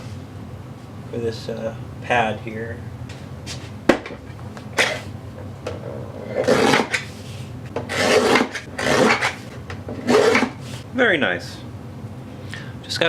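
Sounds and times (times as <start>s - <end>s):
rasping rubbing strokes on mat: 6.2s - 10.8s.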